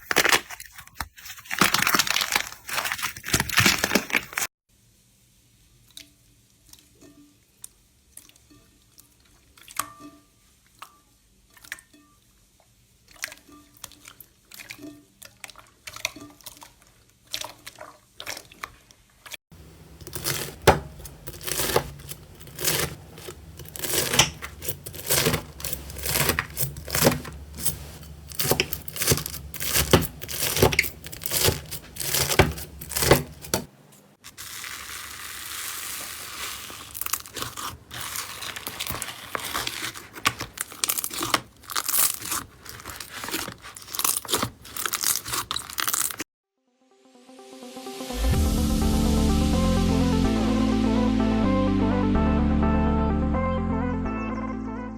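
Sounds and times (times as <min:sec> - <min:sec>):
slime crackling and popping: 0:19.9 - 0:33.6, 0:34.3 - 0:46.2.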